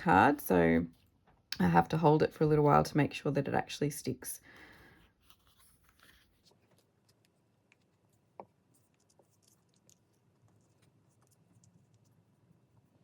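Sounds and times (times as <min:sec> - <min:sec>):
paper rustling: 0:05.1 - 0:12.1.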